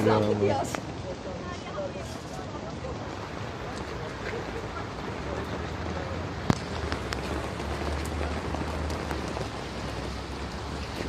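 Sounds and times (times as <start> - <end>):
heavy rain: 0.0 - 11.0
raindrops ticking: 2.4 - 11.0.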